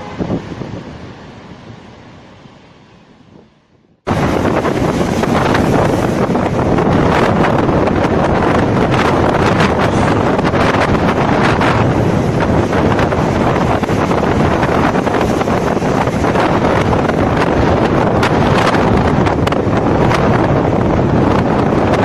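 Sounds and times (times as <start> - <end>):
wind buffeting microphone: 0.0 - 2.3, 3.1 - 22.0
sea waves washing: 4.1 - 22.0.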